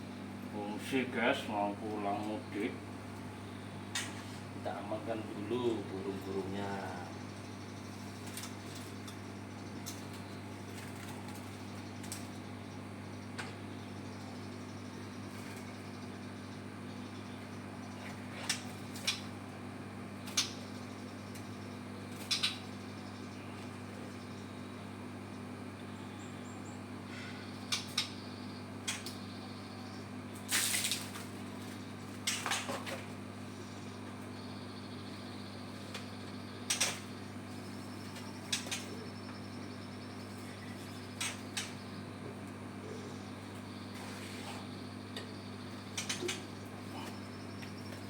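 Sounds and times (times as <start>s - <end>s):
low mechanical hum: 0.0s - 48.0s.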